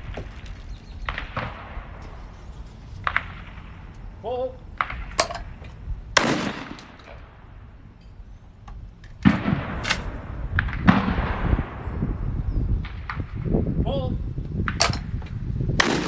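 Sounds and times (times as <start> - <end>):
rustling noise: 0.0 - 4.0
shotgun shot with echo: 6.2 - 7.4, 9.2 - 11.8, 15.8 - 16.0.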